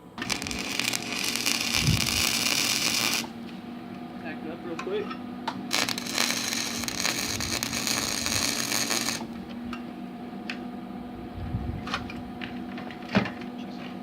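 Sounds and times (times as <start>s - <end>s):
welder arc crackling: 0.0s - 3.7s, 5.5s - 9.8s.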